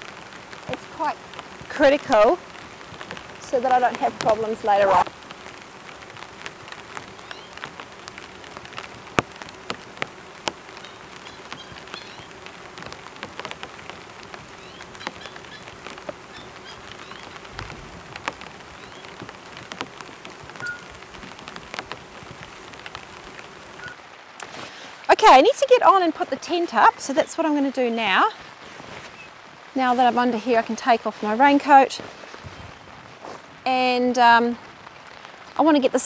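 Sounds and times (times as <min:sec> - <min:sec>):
faint steady hum: 0:00.0 - 0:36.0
rain on a tarp: 0:00.0 - 0:36.0.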